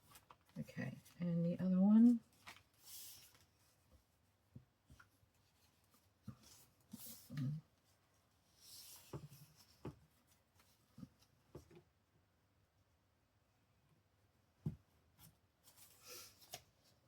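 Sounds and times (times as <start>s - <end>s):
paper rustling and sliding: 2.3s - 3.8s.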